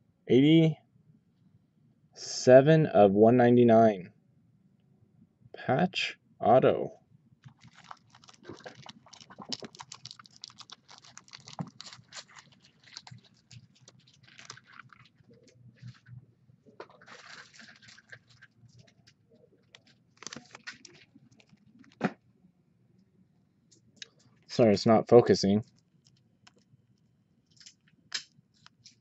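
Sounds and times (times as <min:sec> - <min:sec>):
card packaging rustling: 0:07.5 - 0:16.1, 0:16.8 - 0:22.1.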